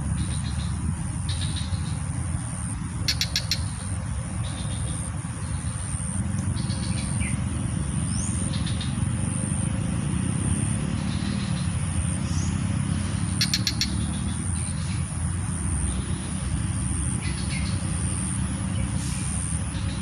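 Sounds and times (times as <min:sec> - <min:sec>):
bird chirps: 0:03.0 - 0:09.3, 0:11.0 - 0:15.1.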